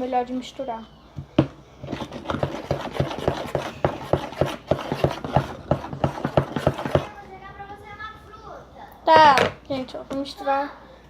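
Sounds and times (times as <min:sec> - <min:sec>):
hand stirring sticky slime: 0:01.8 - 0:07.5.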